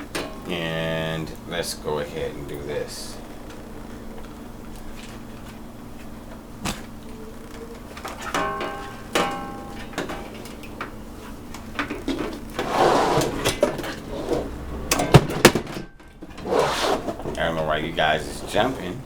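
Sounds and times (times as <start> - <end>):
metal scraping: 16.3 - 17.3.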